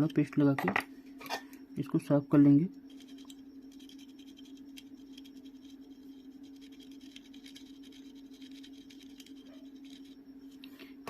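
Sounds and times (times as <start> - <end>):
steady low hum: 0.0 - 11.0
tool scratching circuit board: 2.9 - 10.6.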